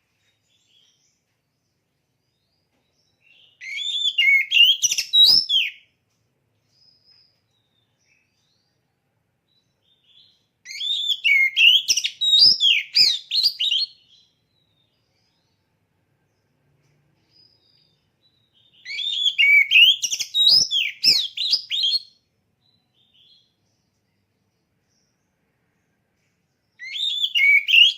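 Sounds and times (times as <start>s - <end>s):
bird singing whistled notes: 2.3s - 5.9s, 9.5s - 15.7s, 17.2s - 23.9s, 26.7s - 27.9s.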